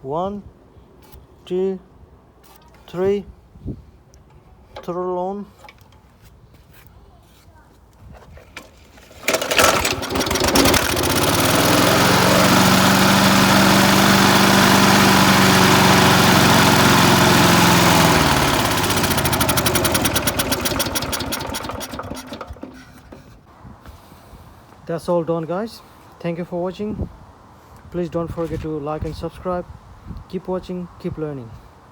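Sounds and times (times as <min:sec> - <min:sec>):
lawn mower engine running: 0:09.1 - 0:23.4.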